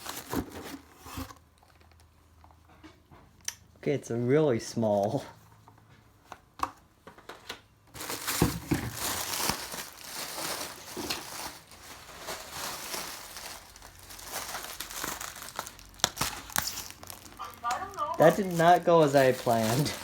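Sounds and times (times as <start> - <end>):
packaging crinkling and rustling: 0.0 - 2.6, 7.1 - 20.0.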